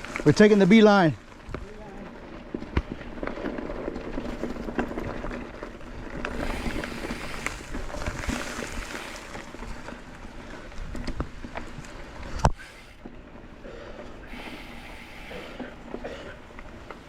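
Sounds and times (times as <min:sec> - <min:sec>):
bike rattling: 0:00.0 - 0:17.0
bike tyres rolling over rough ground: 0:00.0 - 0:17.0.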